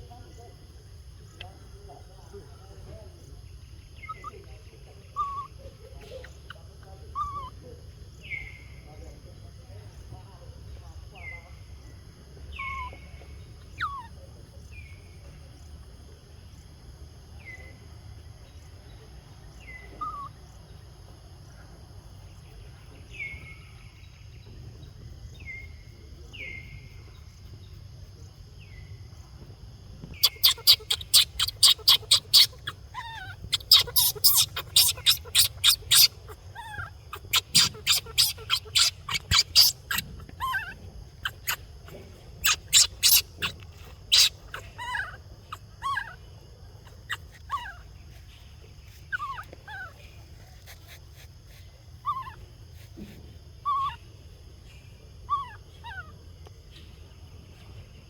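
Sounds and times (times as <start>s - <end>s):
animal chirps: 4.0s - 4.5s, 5.1s - 8.6s, 12.5s - 13.1s, 13.7s - 14.1s, 19.6s - 20.4s, 30.2s - 52.4s, 53.6s - 54.1s, 54.7s - 56.2s
harsh animal calls: 30.2s - 48.0s.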